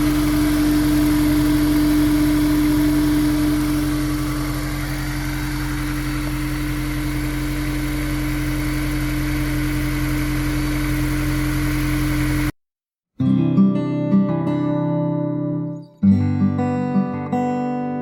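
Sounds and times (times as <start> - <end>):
car engine idling: 0.0 - 12.5
loud constant pitched hum: 0.0 - 12.5.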